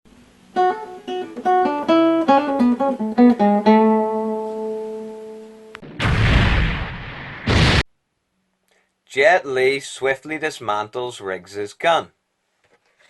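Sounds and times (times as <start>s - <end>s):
plucked guitar phrase: 0.6s - 5.7s.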